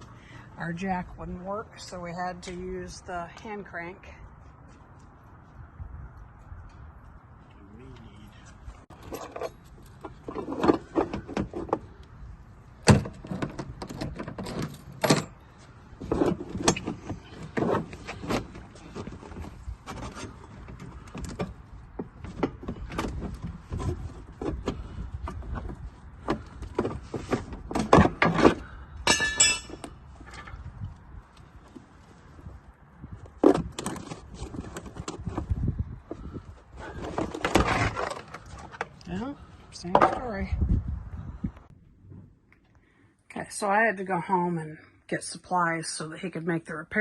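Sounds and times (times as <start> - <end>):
metallic clanks and rattles: 8.9 - 11.9, 12.8 - 30.6.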